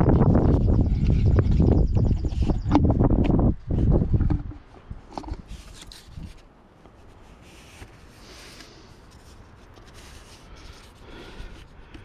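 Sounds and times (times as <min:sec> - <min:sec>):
parts rubbing and scraping: 0:03.8 - 0:11.8.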